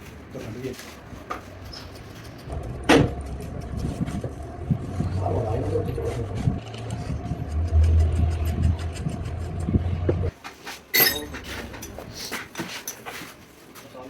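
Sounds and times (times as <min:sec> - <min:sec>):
engine running with clatter: 0:02.5 - 0:10.3.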